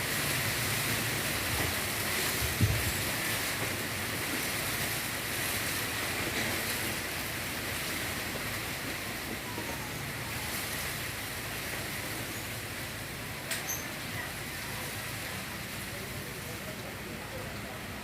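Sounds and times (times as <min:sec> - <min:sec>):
strong wind blowing: 0:02.3 - 0:03.2.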